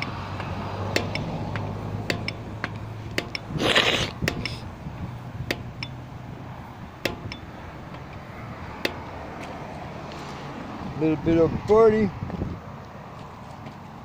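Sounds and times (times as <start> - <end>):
metallic clicks from pump: 0.0 - 3.6, 4.2 - 4.7
low hum of traffic: 0.0 - 14.0
short hiss of air: 3.6 - 4.6.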